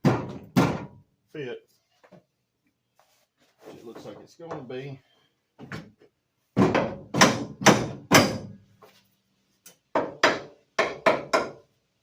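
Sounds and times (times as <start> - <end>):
thunks on metal bar: 6.6 - 8.6.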